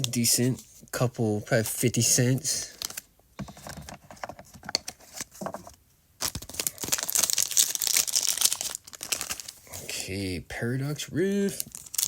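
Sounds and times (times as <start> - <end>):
foil wrapper crinkling and tearing: 6.2 - 9.8, 11.4 - 12.0.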